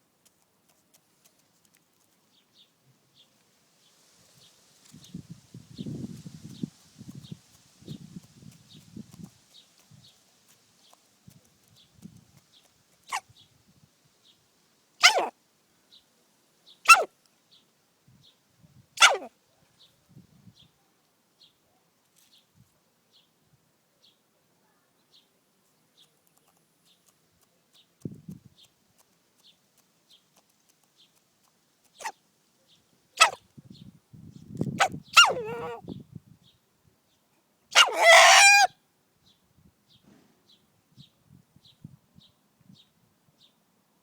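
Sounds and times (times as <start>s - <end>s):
rooster sneezing: 15.0s - 15.3s.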